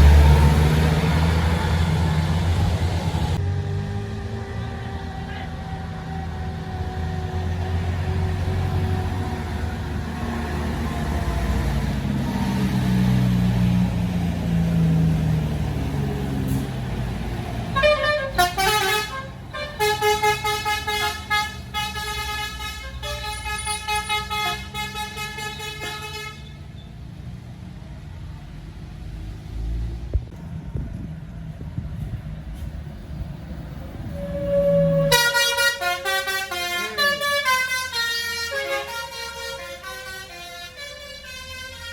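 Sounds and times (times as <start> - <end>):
diesel engine running: 0.0 - 3.4
multi-tone air horn blasts: 17.8 - 26.6, 34.0 - 41.9.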